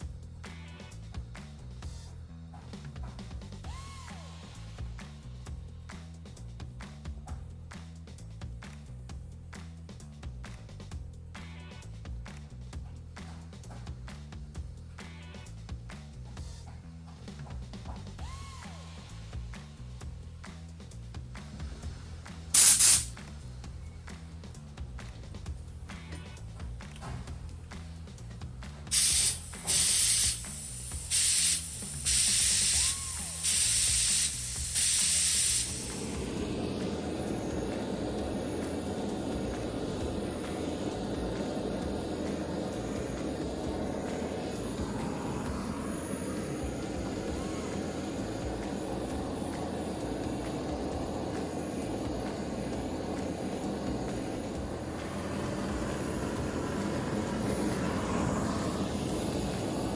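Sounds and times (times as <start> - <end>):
gas torch rushing: 22.6 - 23.2, 28.9 - 59.9
spray hissing bursts: 22.6 - 23.2, 28.9 - 45.1.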